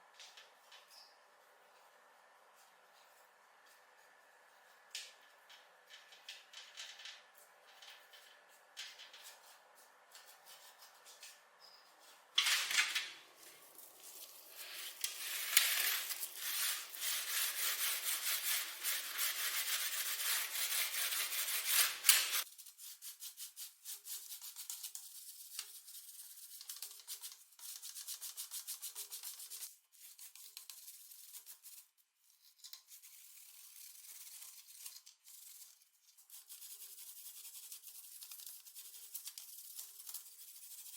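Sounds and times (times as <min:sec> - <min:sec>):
rubbing on hard surface: 0:13.4 - 0:31.9.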